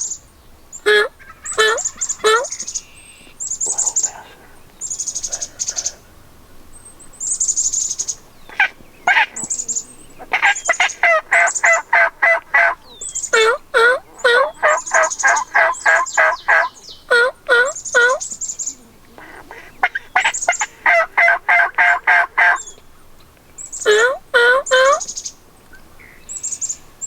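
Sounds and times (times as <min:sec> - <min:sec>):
turkeys yelping: 0:00.9 - 0:02.6, 0:08.5 - 0:22.8, 0:23.8 - 0:25.1.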